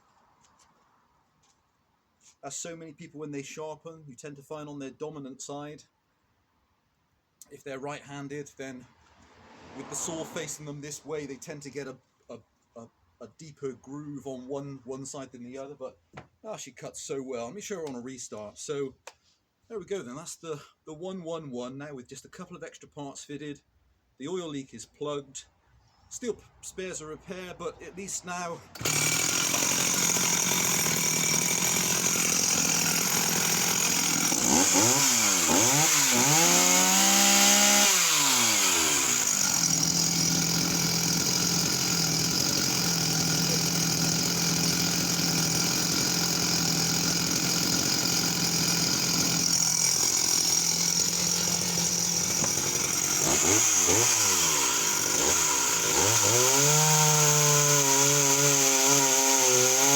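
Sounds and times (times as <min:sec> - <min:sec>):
chainsaw idling and revving: 0:09.4 - 0:11.3, 0:28.7 - 0:59.9.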